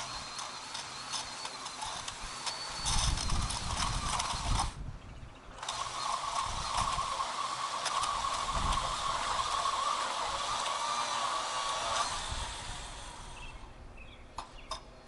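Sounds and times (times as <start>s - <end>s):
electric motor whining: 0.0s - 4.8s, 5.6s - 13.6s.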